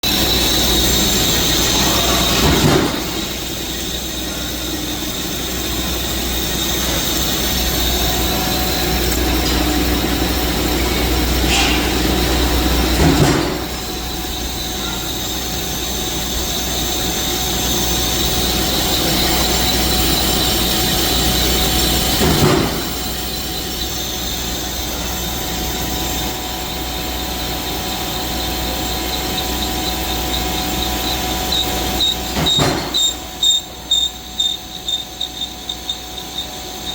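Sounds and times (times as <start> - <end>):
metal lathe humming: 0.0 - 36.9.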